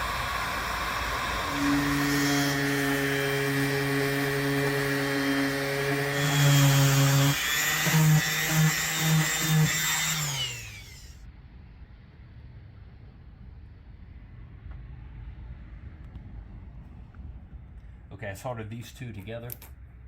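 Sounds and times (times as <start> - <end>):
electric tool motor running: 0.0 - 11.2
motor spinning down: 0.0 - 11.2.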